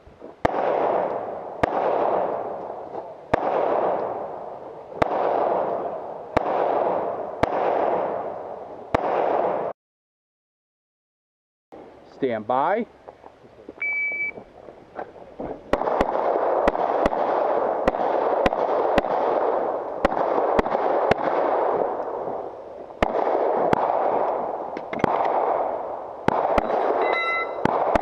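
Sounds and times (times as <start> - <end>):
pistol shots: 0.4 - 9.7, 15.7 - 22.4, 23.0 - 28.0
shot timer beep: 13.8 - 14.4, 26.6 - 27.7.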